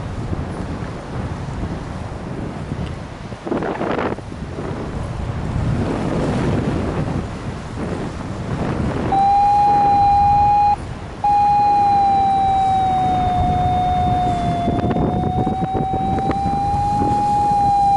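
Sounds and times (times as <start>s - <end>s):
wind buffeting microphone: 0.0s - 17.9s
siren-like tone: 9.1s - 17.9s.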